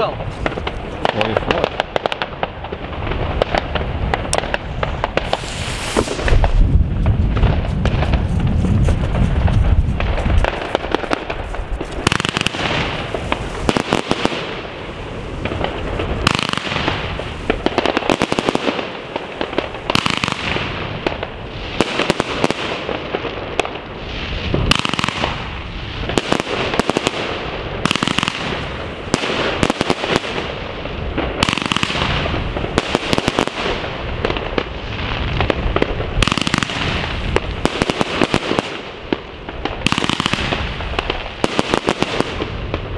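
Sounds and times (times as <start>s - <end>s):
firework cake shots and bursts: 0.0s - 14.7s
hissing firework wash: 0.0s - 42.9s.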